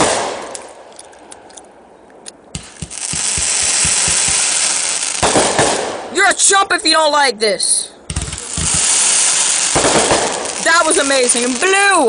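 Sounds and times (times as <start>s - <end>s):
firework bangs: 0.0s - 0.8s, 2.5s - 6.2s, 8.0s - 12.0s
fireworks crackling hiss: 2.6s - 7.0s, 8.0s - 12.0s.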